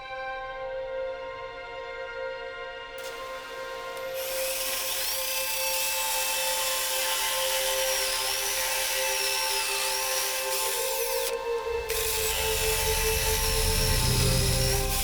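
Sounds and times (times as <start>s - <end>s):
background music: 0.0s - 15.0s
power tool whining: 3.0s - 15.0s.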